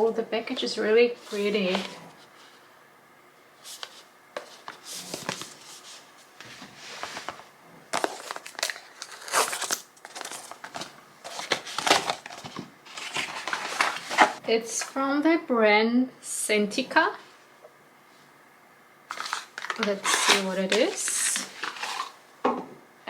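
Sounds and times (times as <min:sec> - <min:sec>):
wrapping rustling and crinkling: 0:03.6 - 0:15.0, 0:19.1 - 0:22.2
wrapping tearing: 0:08.0 - 0:14.4, 0:19.1 - 0:22.2.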